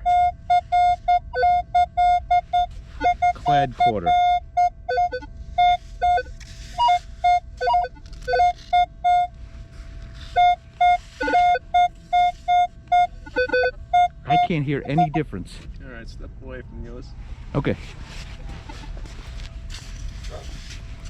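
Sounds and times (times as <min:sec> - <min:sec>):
metal detector beeping: 0:00.0 - 0:09.4, 0:10.2 - 0:15.3.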